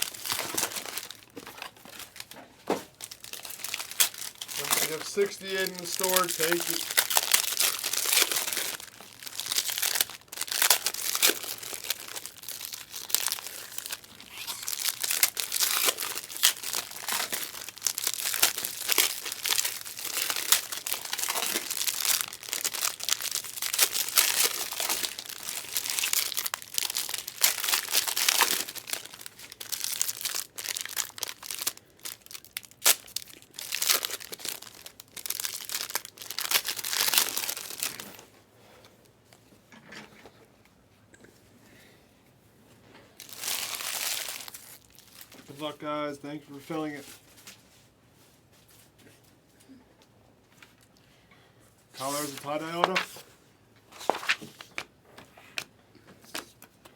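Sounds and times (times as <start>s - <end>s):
packaging torn and crinkled: 0.0s - 2.4s, 3.0s - 38.2s, 43.2s - 45.6s, 54.0s - 54.8s.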